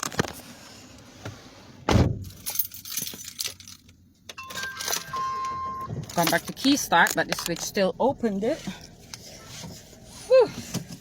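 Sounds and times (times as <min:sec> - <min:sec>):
heavy thump: 0:01.9 - 0:02.3
car keys jangling: 0:02.2 - 0:07.8
dashboard electronic chime: 0:04.4 - 0:05.9.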